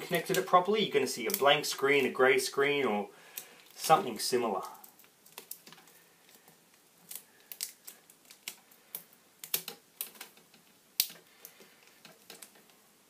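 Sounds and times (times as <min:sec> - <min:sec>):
plastic laptop parts clicking: 0:04.8 - 0:12.8.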